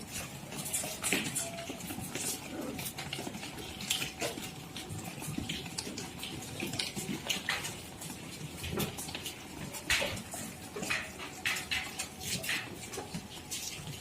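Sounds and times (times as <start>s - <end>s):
goats moving about: 0.0s - 14.0s.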